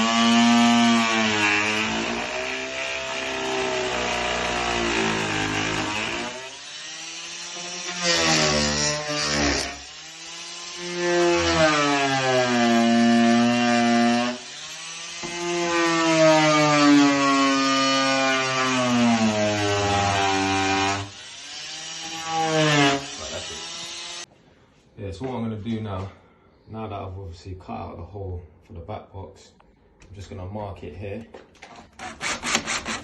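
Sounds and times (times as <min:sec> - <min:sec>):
power tool cutting into wall: 0:00.0 - 0:24.3, 0:31.6 - 0:33.0.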